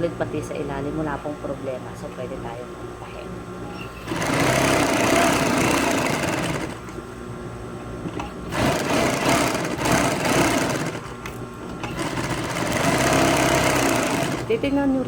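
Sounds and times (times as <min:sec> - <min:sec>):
sewing machine stitching: 0:03.7 - 0:07.0, 0:08.0 - 0:14.7.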